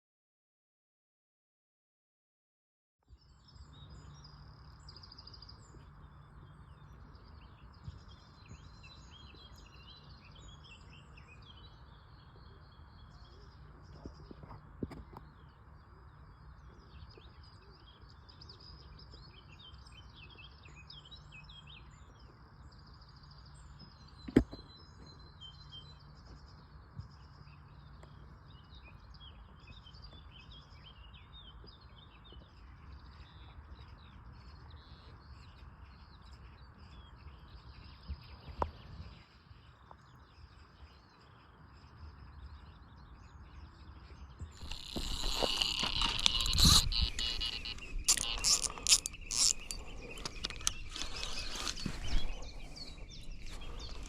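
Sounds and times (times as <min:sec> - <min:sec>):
small birds singing and chirping: 0:03.1 - 0:54.0
low wind rumble: 0:44.5 - 0:54.0.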